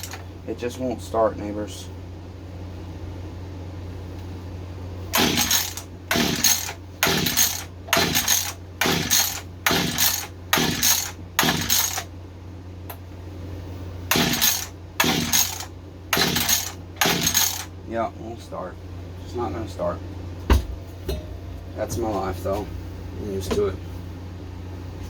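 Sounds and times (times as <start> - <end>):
engine turning over: 0.0 - 0.2, 5.1 - 12.1, 14.1 - 17.7
recoil starter rope rasping: 5.1 - 12.0, 14.1 - 17.7.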